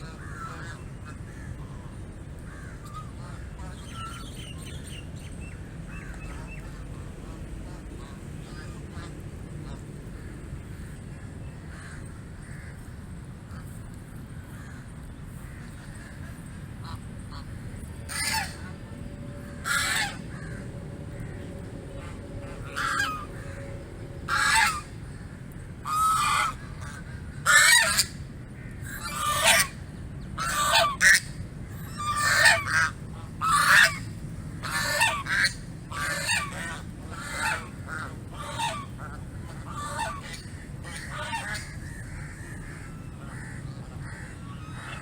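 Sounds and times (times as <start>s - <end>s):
goose honking: 0.0s - 1.8s, 16.8s - 29.8s, 30.4s - 45.0s.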